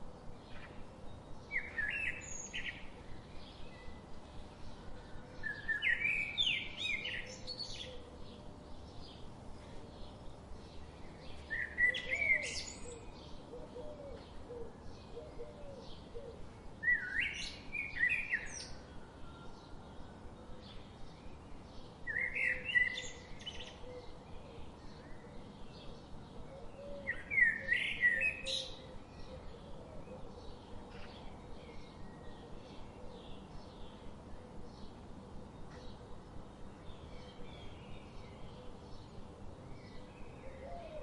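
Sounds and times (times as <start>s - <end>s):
faint bird chirping: 0.0s - 41.0s
songbird singing loud phrase: 0.1s - 9.3s, 9.9s - 41.0s.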